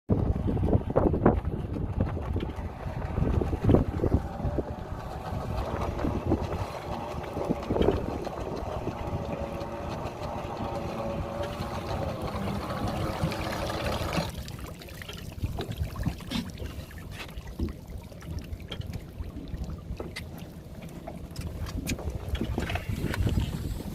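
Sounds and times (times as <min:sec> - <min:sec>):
wind buffeting microphone: 0:00.1 - 0:14.4, 0:21.3 - 0:23.9
small boat motor running: 0:00.1 - 0:23.9.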